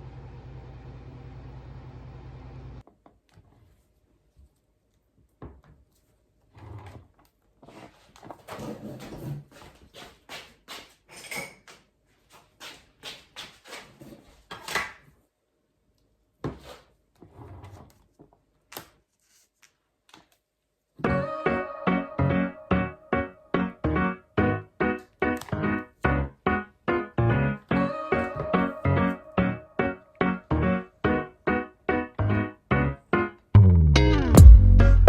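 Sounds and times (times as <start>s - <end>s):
background music: 21.0s - 35.0s.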